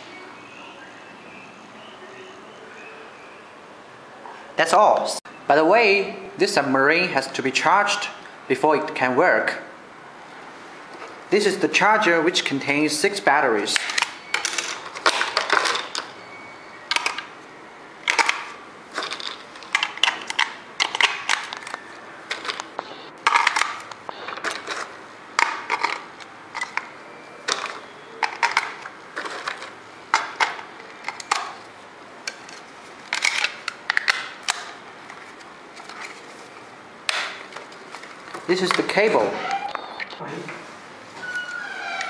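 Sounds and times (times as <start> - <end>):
handling plastic charger clicks: 18.0 - 26.9, 27.5 - 31.6.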